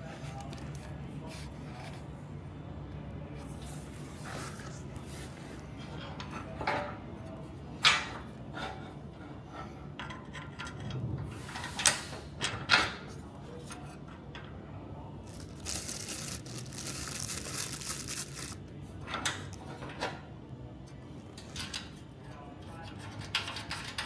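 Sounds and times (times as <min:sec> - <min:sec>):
rustling scrape: 0:03.4 - 0:05.8.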